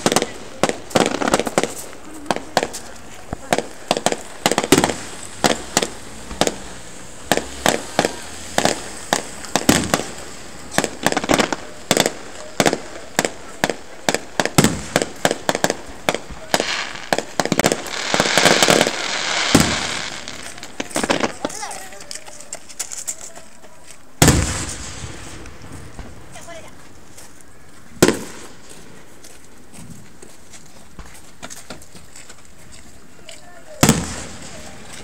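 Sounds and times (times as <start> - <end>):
fireworks bangs: 0.0 - 22.2, 24.2 - 26.9, 28.0 - 29.2, 33.6 - 35.0
dense rushing noise: 3.4 - 11.8.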